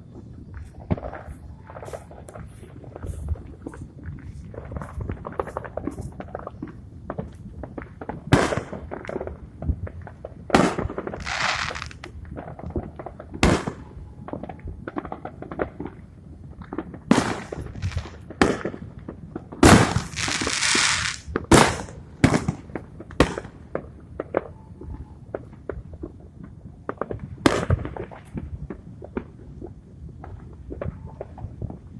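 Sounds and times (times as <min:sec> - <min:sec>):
hissing crackle of fireworks: 0:00.0 - 0:31.9
fireworks banging: 0:10.6 - 0:13.9, 0:16.9 - 0:24.4.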